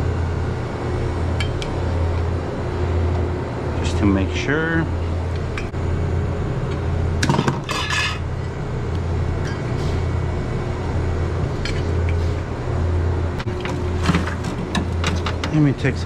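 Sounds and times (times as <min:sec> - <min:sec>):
steady low hum: 0:00.0 - 0:16.0
ice and metal clinking: 0:07.2 - 0:08.2.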